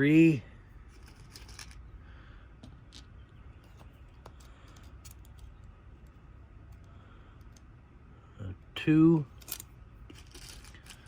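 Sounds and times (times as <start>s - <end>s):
low room hum: 0.0s - 11.0s
light clicks of lock parts: 2.6s - 7.7s.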